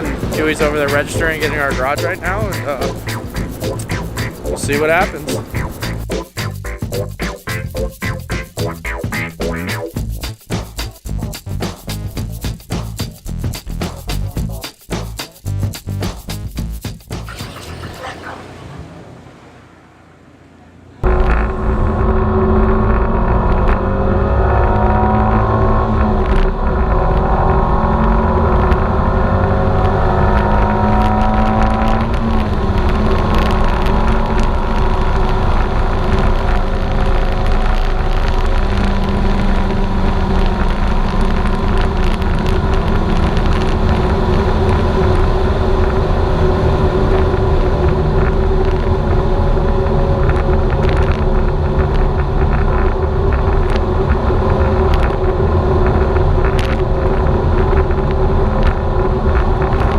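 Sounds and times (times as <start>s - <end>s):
car engine accelerating hard: 0.0s - 6.7s, 17.2s - 59.9s
wind noise: 21.0s - 59.9s.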